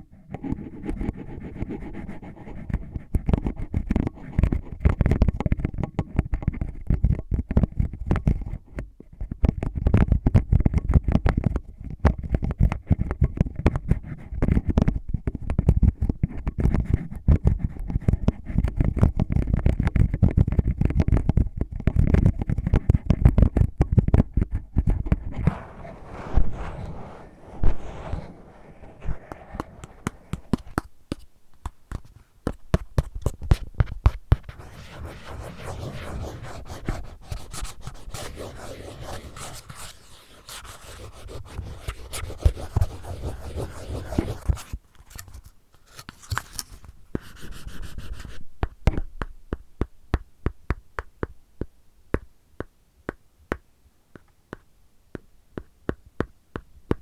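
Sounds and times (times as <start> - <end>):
scratching on earphone case: 24.2 - 31.3, 31.9 - 49.1.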